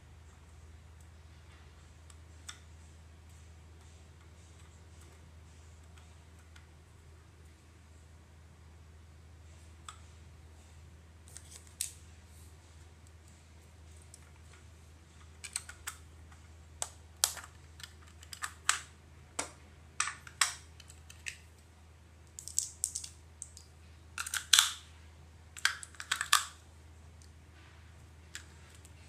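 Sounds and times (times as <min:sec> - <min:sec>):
plastic parts clicking: 0:15.3 - 0:16.0, 0:16.8 - 0:21.4, 0:22.4 - 0:24.8, 0:25.6 - 0:26.6.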